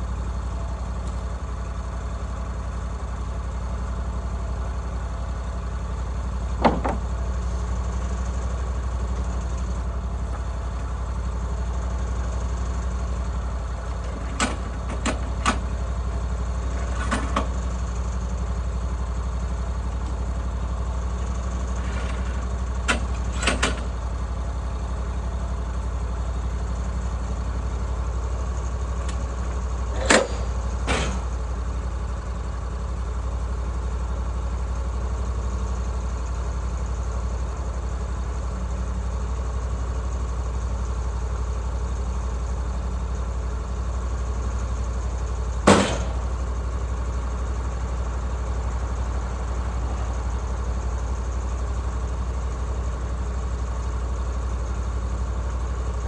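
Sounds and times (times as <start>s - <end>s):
sawmill engine running: 0.0s - 56.0s
sharp knocks: 6.6s - 7.1s, 45.7s - 46.4s.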